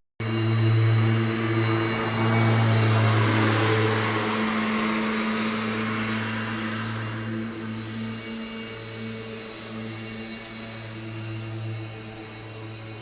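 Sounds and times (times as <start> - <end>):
electric riding mower running: 0.2 - 13.0.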